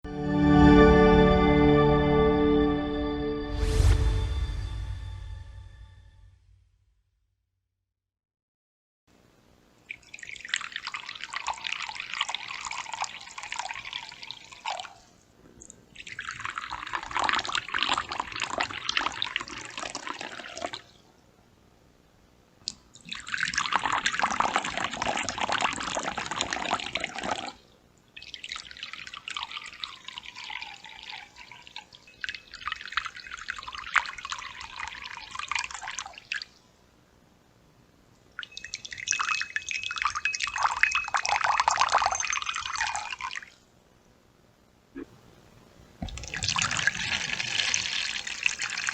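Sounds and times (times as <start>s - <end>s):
water pouring into a bowl: 9.9s - 21.0s, 23.0s - 27.6s, 28.2s - 36.6s, 38.4s - 43.6s, 46.0s - 48.9s.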